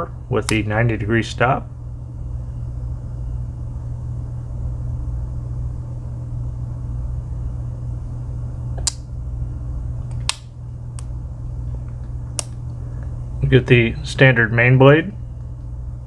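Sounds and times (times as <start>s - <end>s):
steady low hum: 0.0s - 16.0s
knife tools snapping on springs: 10.1s - 10.5s.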